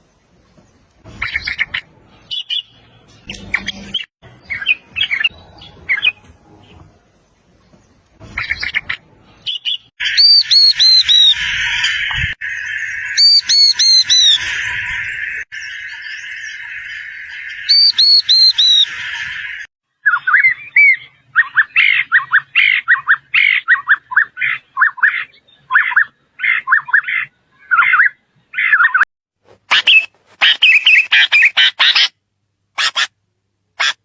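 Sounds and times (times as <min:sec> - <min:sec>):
birds squawking and chirping: 0:00.6 - 0:29.1
high arched bird notes: 0:01.2 - 0:06.8, 0:08.4 - 0:29.0.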